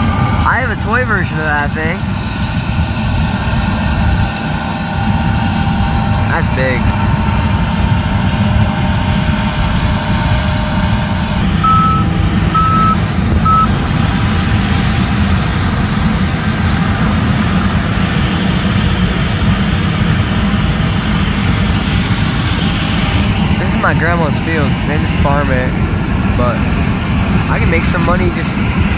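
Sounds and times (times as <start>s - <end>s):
wind buffeting microphone: 0.0s - 28.9s
farm machinery rumbling: 5.5s - 28.9s
reverse alarm beeping: 11.4s - 13.7s.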